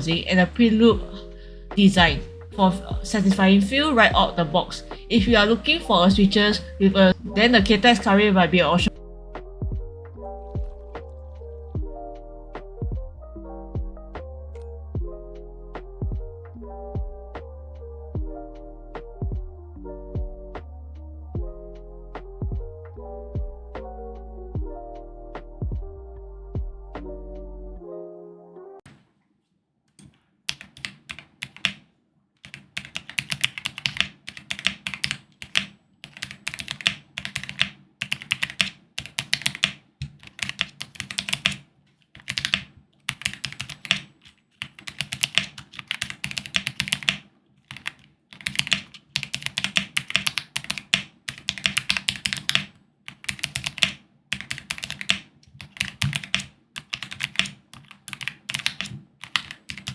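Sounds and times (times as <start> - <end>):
typing on mechanical keyboard: 30.5 - 31.8, 32.4 - 59.9.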